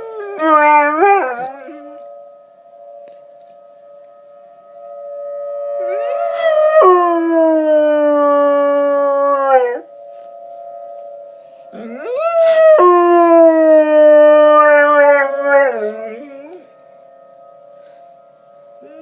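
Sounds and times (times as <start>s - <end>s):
dog howling: 0.0s - 2.1s, 5.8s - 9.9s, 11.7s - 16.7s
tornado siren: 0.0s - 19.0s.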